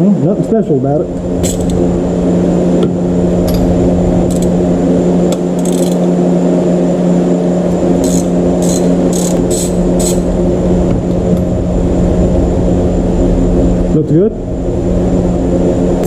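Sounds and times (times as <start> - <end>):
steady motor drone: 0.0 - 16.0.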